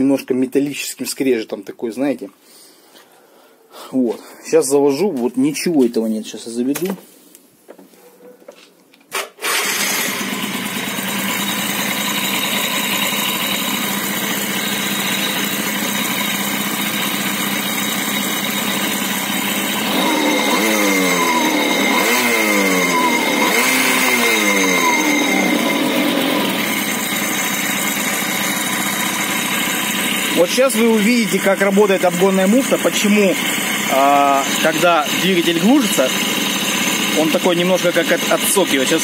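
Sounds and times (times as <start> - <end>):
scooter engine idling and revving: 9.4 - 39.0.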